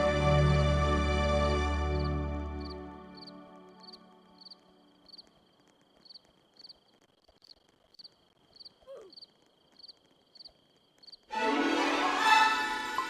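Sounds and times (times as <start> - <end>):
crickets chirping: 2.0 - 11.3
loud music: 11.4 - 13.0.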